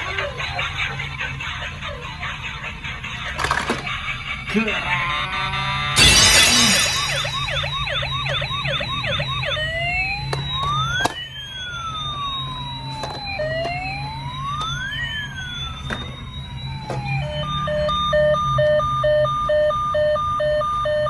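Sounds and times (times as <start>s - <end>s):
electronic toy siren wailing: 0.0s - 21.0s
toy siren click: 5.2s - 21.0s.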